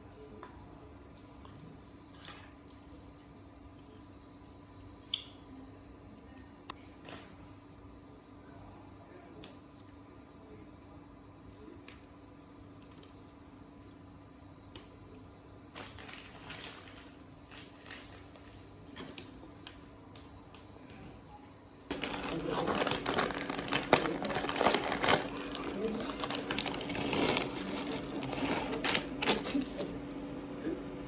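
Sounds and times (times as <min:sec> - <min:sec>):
faint steady hum: 0:00.0 - 0:31.0
rustling: 0:21.9 - 0:29.7.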